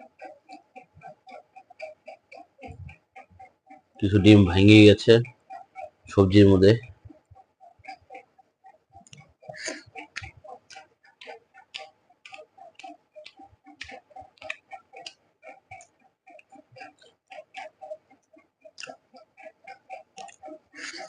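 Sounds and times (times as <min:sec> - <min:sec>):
wet chewing and lip-smacking: 0:09.0 - 0:21.0.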